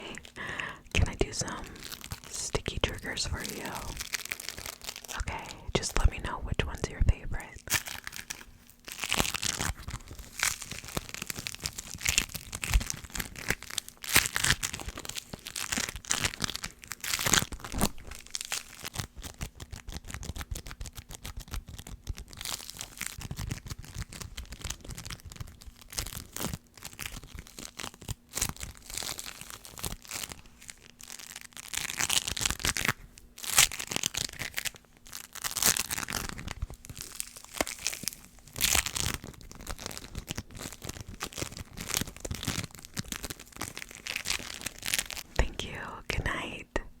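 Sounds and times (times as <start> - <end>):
sticky surfaces peeling apart: 7.7 - 45.2.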